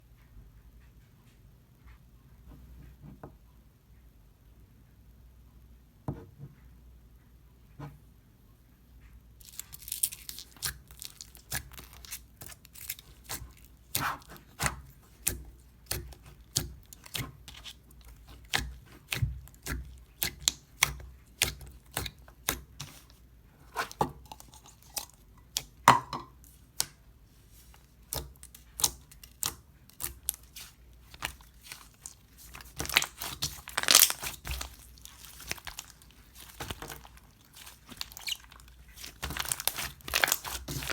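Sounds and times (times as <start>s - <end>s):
crunchy slime crackling: 9.4s - 25.8s, 27.6s - 40.9s.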